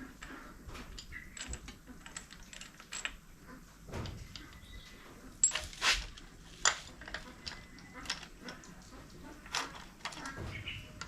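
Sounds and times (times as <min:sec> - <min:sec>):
metallic clicks and clinks: 0:00.2 - 0:03.2, 0:05.4 - 0:08.7.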